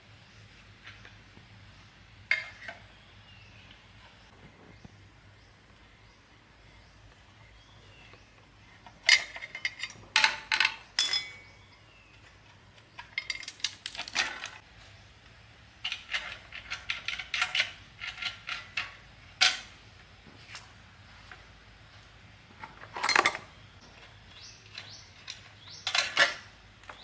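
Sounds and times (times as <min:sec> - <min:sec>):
metal objects clinking together: 0:08.9 - 0:12.3, 0:13.0 - 0:14.6, 0:15.8 - 0:19.8, 0:22.8 - 0:23.5, 0:24.6 - 0:27.0.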